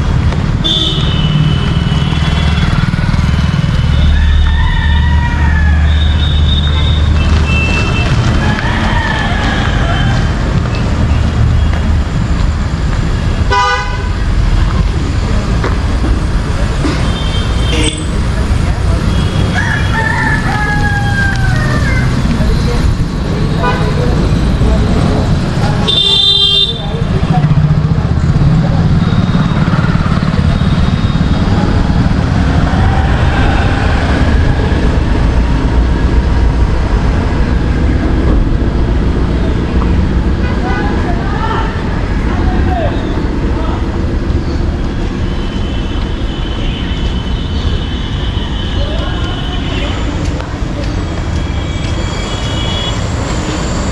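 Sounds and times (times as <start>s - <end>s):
street traffic rumble: 0.0s - 53.9s
vehicle horn honk: 0.6s - 2.6s, 13.5s - 14.2s, 17.0s - 18.2s, 25.8s - 27.0s.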